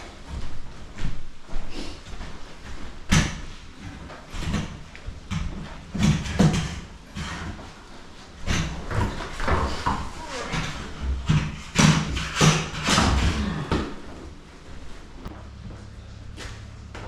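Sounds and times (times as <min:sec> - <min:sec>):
knocks and thumps: 0:02.8 - 0:07.7.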